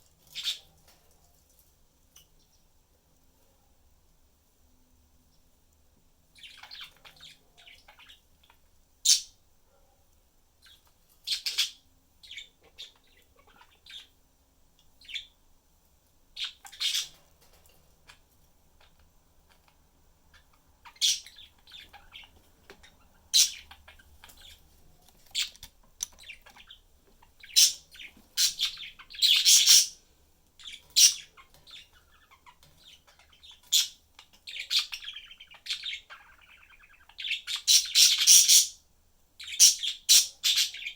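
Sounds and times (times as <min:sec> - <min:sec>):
budgerigars chirping: 0:00.3 - 0:00.7, 0:06.4 - 0:09.4, 0:10.6 - 0:14.1, 0:15.0 - 0:15.4, 0:16.4 - 0:17.2, 0:18.8 - 0:24.6, 0:25.2 - 0:38.8, 0:39.4 - 0:40.9.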